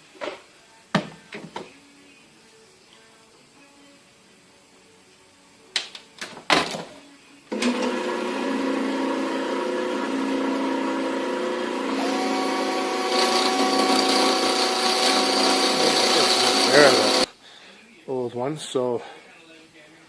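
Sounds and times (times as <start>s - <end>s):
power tool motor humming: 7.5s - 17.3s.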